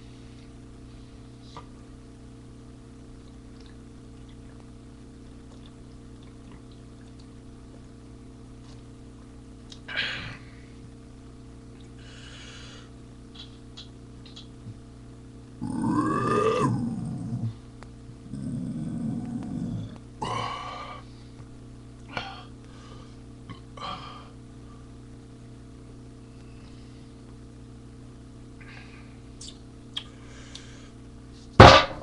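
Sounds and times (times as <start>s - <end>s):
steady electrical hum: 0.0s - 32.0s
man burping loudly: 15.6s - 16.9s.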